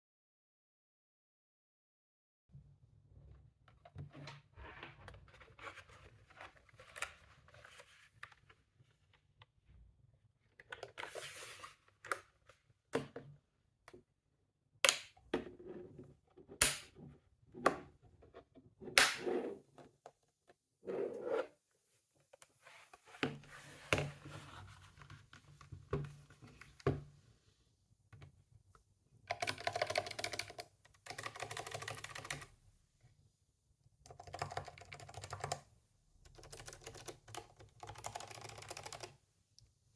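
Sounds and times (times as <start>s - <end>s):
mechanical keyboard typing: 29.3s - 32.5s, 34.1s - 35.6s, 36.3s - 39.1s.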